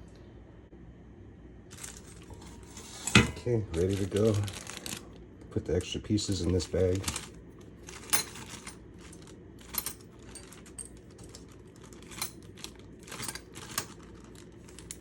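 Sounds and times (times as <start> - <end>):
small hardware clinking: 7.0 - 15.0.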